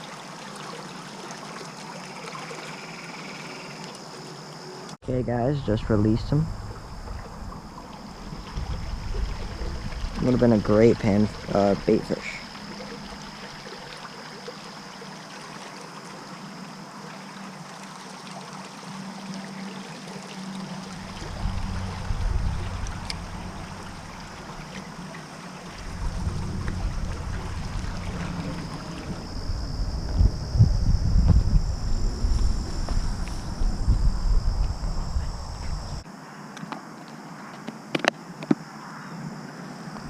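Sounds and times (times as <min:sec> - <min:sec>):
creek water flowing: 0:00.0 - 0:36.1
insect drone: 0:00.0 - 0:40.0
low rumbling on microphone: 0:05.1 - 0:11.5, 0:20.8 - 0:36.0.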